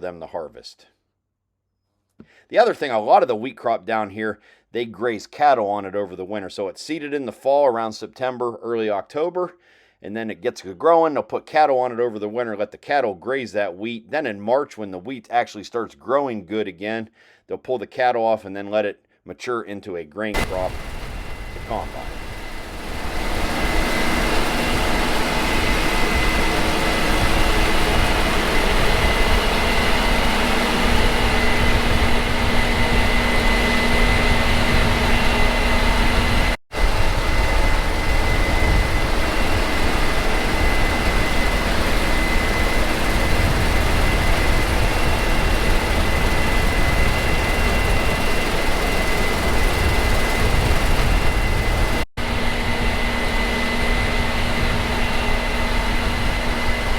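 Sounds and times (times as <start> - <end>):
combine harvester engine: 20.4 - 56.8
high machinery whine: 20.4 - 56.9.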